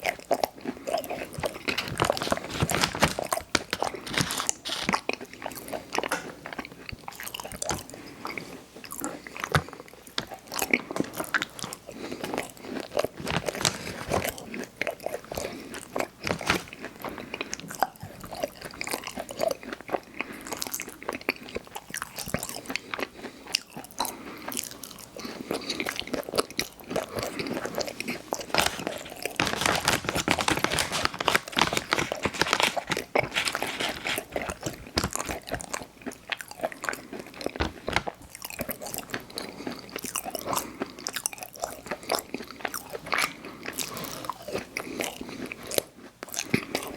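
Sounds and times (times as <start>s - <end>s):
person chewing cookies: 0.0s - 46.9s
small crunching: 0.0s - 46.9s.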